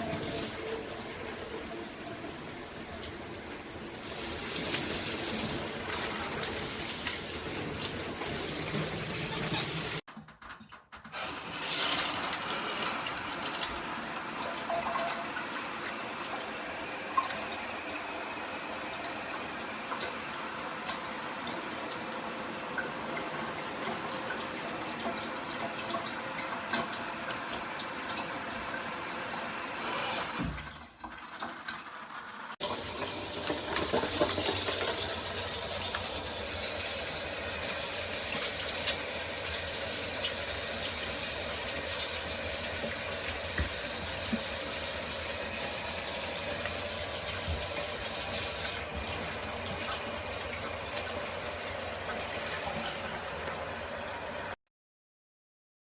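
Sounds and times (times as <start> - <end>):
shower water spraying: 0.0 - 10.0, 11.2 - 14.4.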